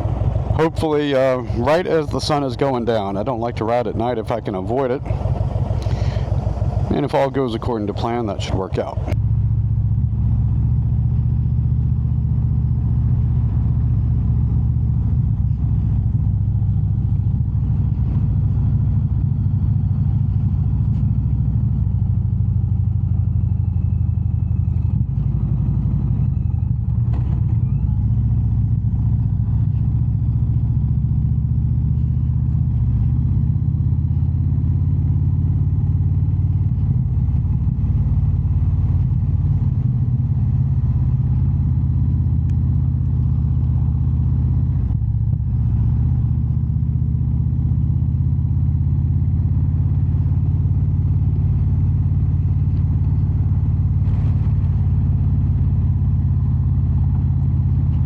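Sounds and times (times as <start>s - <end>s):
motorcycle engine droning: 0.0s - 58.0s.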